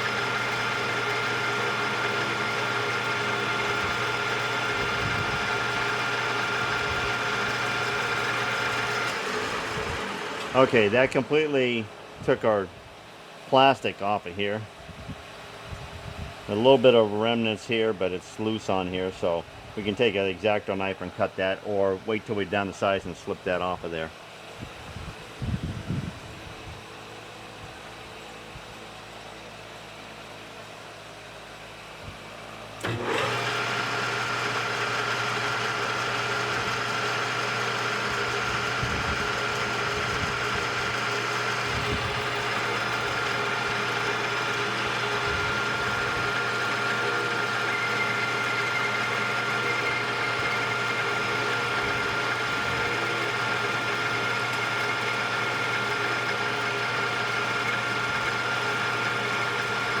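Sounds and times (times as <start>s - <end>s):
metal lathe whining: 0.0s - 12.6s, 32.8s - 60.0s
mechanical hum: 0.0s - 60.0s.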